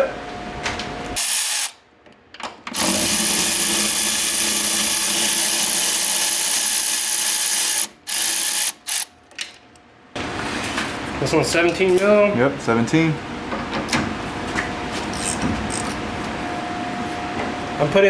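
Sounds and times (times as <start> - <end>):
power drill spinning bolt: 2.7 - 9.1.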